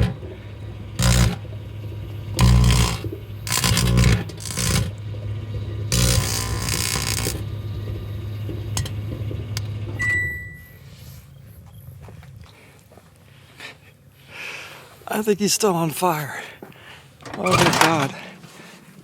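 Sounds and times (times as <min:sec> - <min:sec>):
microwave beep: 0:00.0 - 0:12.0
microwave oven humming: 0:00.0 - 0:13.1
crackling of foil arcing: 0:01.0 - 0:01.5, 0:02.2 - 0:05.0, 0:05.9 - 0:07.5
clicks: 0:17.2 - 0:18.2.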